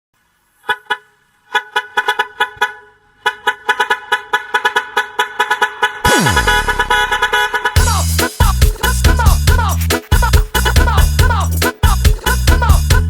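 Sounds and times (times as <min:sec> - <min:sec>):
truck horn toots: 0:00.6 - 0:13.0
falling electronic sweep: 0:06.0 - 0:08.4
remix beat: 0:06.0 - 0:13.0.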